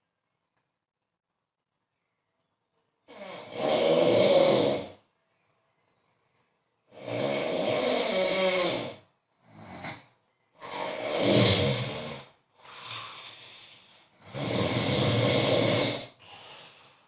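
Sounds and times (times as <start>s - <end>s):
man snoring very loudly: 3.1s - 5.0s, 6.9s - 13.6s, 14.2s - 16.6s.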